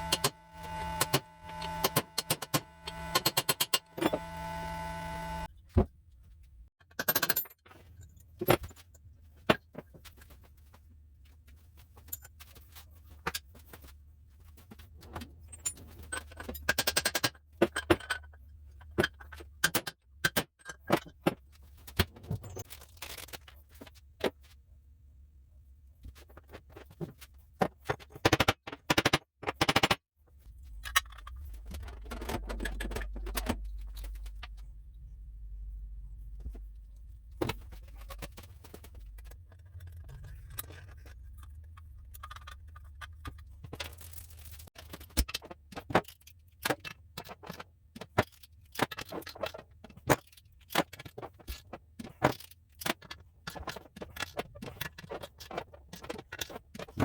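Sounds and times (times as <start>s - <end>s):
steady low hum: 0.0s - 5.5s, 30.4s - 42.3s.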